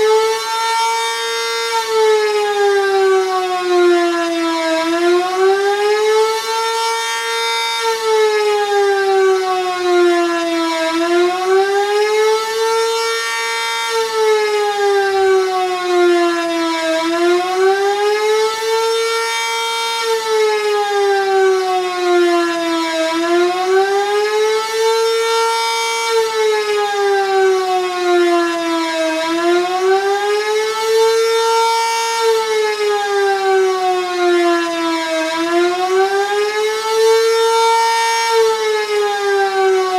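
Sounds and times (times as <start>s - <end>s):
warning siren wailing: 0.0s - 39.9s.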